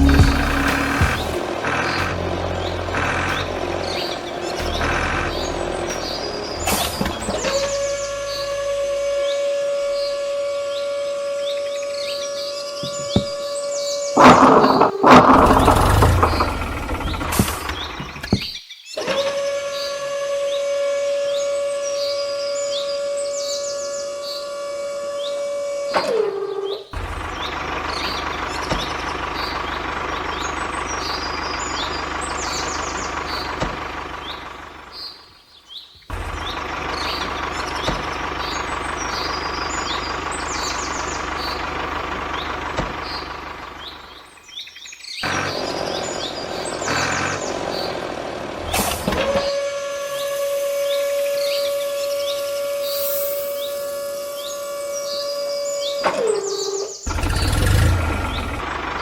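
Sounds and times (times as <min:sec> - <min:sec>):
birds chirping: 0:00.0 - 0:19.0, 0:51.5 - 0:59.0
small electric motor whine: 0:49.0 - 0:56.2.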